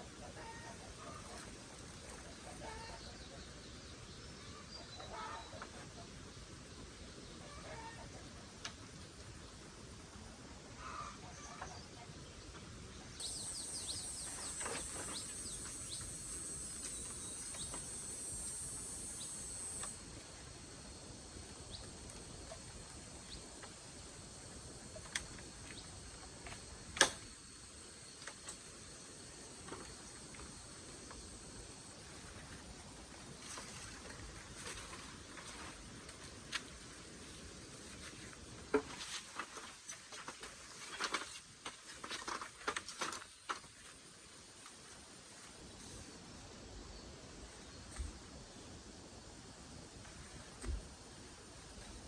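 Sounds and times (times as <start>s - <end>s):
insects buzzing: 12.9s - 52.0s.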